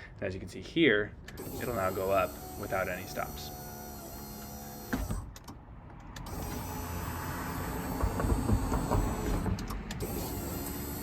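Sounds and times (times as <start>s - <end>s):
power window motor running: 1.4s - 5.4s, 6.2s - 11.0s
window glass knocking shut: 7.9s - 9.6s.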